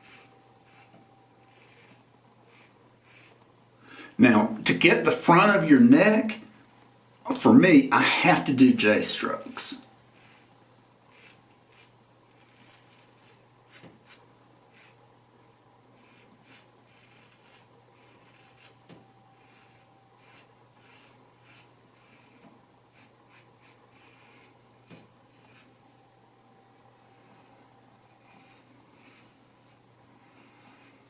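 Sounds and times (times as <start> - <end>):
razor scraping stubble: 0.0 - 3.4, 9.3 - 15.0, 16.0 - 25.8, 26.7 - 31.0.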